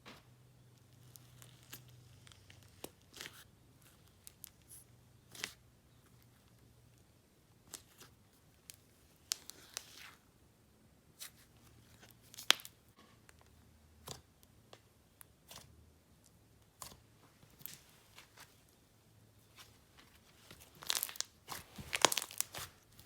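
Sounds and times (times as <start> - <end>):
slime clicking and popping: 20.8 - 21.3, 21.9 - 22.6.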